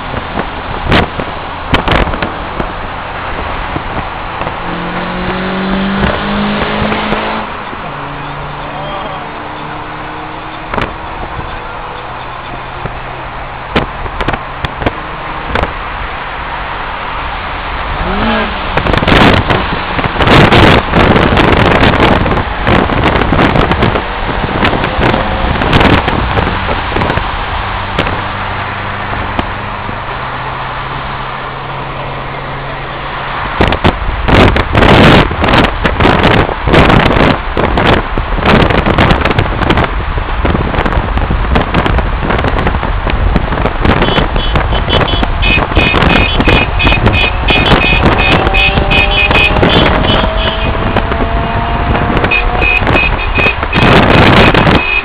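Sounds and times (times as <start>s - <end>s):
wind buffeting microphone: 0.0s - 8.5s, 17.8s - 30.2s, 33.4s - 55.0s
car engine running: 0.0s - 55.0s
road noise: 0.0s - 55.0s.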